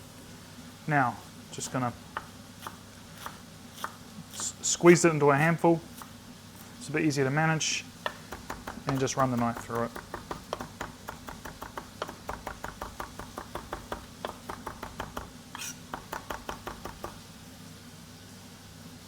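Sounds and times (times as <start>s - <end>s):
knife chopping on a cutting board: 2.1s - 4.6s, 8.0s - 17.3s
knife scraping a board: 2.2s - 4.6s, 8.1s - 17.2s.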